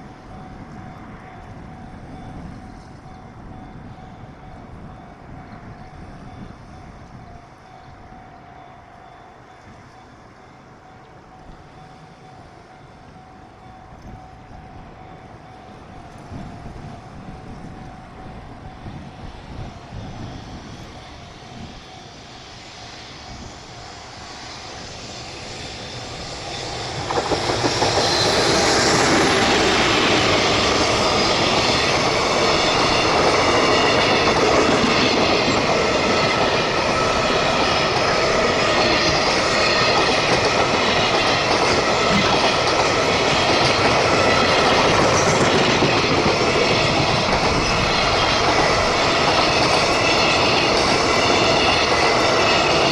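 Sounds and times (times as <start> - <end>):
freight train passing: 0.0 - 52.9
wheels on rails: 20.8 - 52.9.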